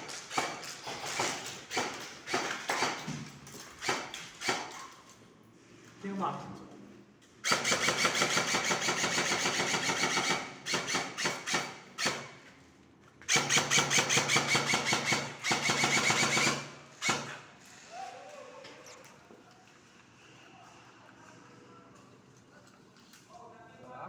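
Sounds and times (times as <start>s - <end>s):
electric gun firing bursts: 7.4s - 12.4s, 13.3s - 17.5s.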